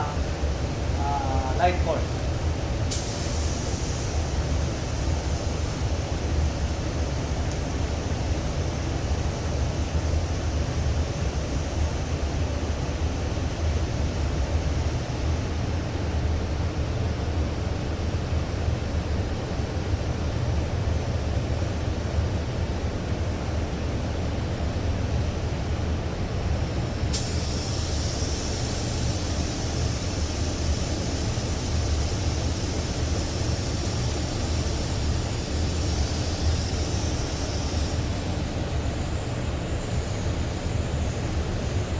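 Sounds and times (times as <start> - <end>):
spray gun air hiss: 2.9 - 12.0, 26.6 - 41.9.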